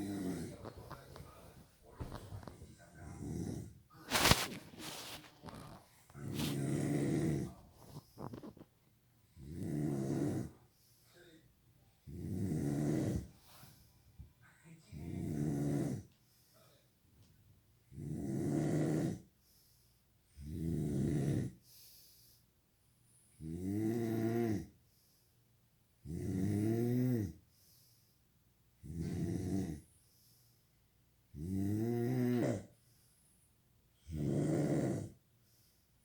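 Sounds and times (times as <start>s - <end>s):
person snoring: 0.0s - 0.9s, 2.0s - 8.5s, 9.4s - 10.6s, 12.1s - 13.3s, 15.0s - 16.0s, 17.9s - 19.3s, 20.4s - 21.6s, 31.4s - 32.7s, 34.1s - 35.2s.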